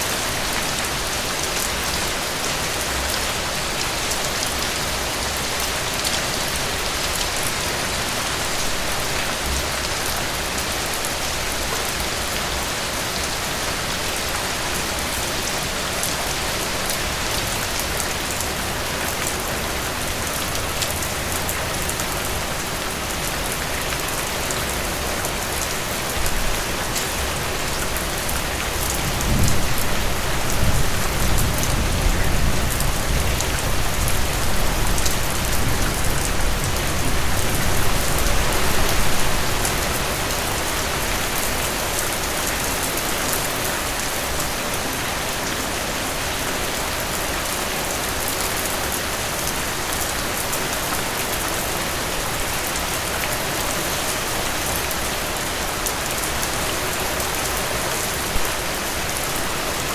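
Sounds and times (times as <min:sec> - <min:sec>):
heavy rain: 0:00.0 - 0:59.9
thunder rumble: 0:29.0 - 0:39.2.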